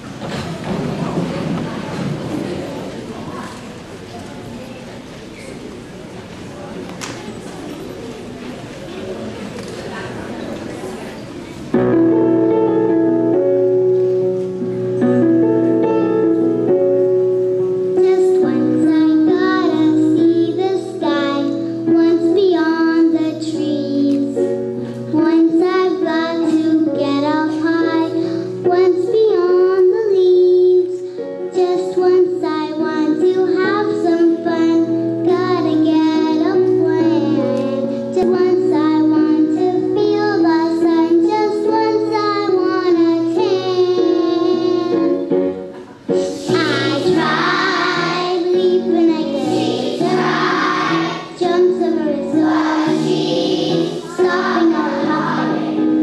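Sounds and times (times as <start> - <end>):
instrumental backing music: 11.6 - 56.0
children singing: 46.2 - 56.0.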